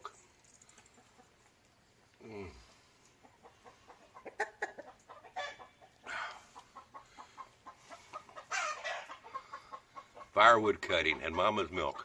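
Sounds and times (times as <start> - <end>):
chickens clucking: 0.0 - 12.0
chicken squawks: 3.4 - 10.4.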